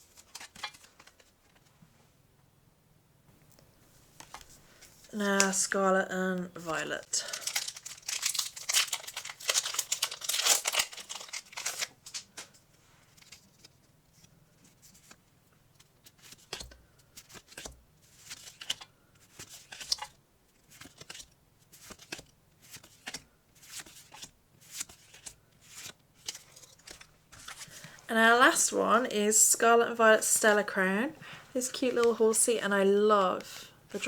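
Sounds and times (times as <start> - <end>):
cards rustling and sliding: 0.0 - 1.7, 4.1 - 5.6, 7.2 - 13.8, 16.0 - 28.0
foil wrapper crinkling and tearing: 7.0 - 12.5.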